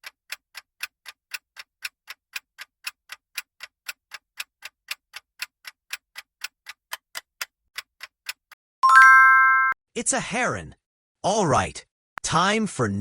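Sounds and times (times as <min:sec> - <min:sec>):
clock ticking: 0:00.0 - 0:08.6.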